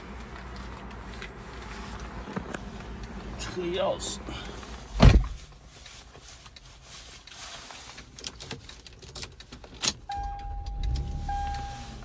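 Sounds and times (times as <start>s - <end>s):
car engine starting and running: 0.0s - 5.4s, 8.4s - 12.0s
car keys jangling: 8.0s - 12.0s
electronic chime tone: 10.1s - 12.0s.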